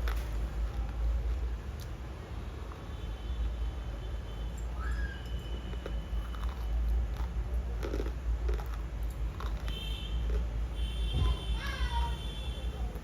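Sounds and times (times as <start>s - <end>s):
crunching of crisp food chewed: 0.0s - 3.0s, 5.3s - 10.9s.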